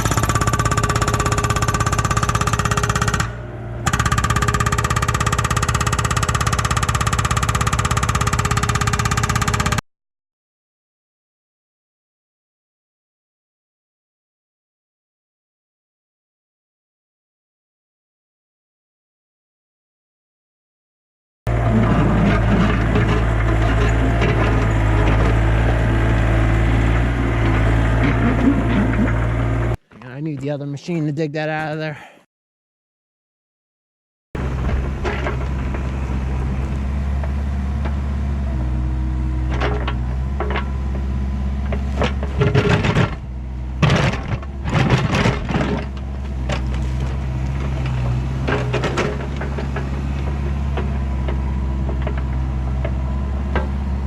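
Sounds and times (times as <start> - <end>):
excavator engine running: 0.0 - 9.8, 21.5 - 31.9, 34.4 - 54.0
hydraulic breaker pounding rock: 0.0 - 9.8, 21.5 - 29.8, 34.4 - 38.6, 39.4 - 54.0.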